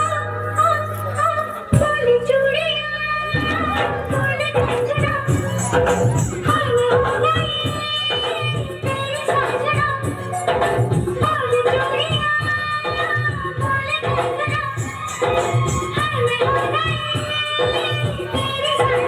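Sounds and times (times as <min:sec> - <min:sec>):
steady music accompaniment: 0:00.0 - 0:12.4.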